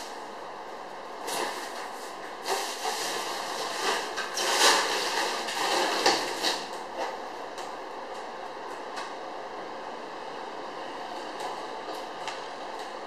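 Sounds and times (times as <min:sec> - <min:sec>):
scraping and rustling: 0:01.2 - 0:07.2.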